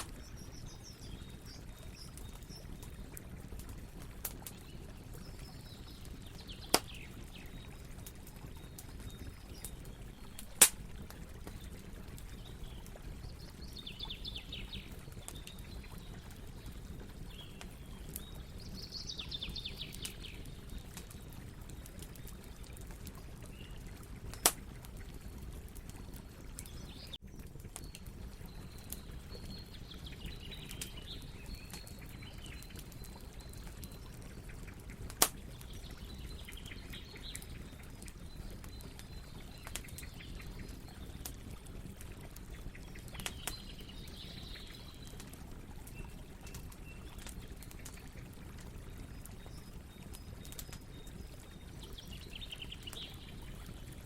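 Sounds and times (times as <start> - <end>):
burning wood popping: 0.0 - 0.4, 2.0 - 7.2, 8.6 - 12.8, 24.2 - 26.0, 34.8 - 36.1
campfire rumbling: 0.0 - 54.0.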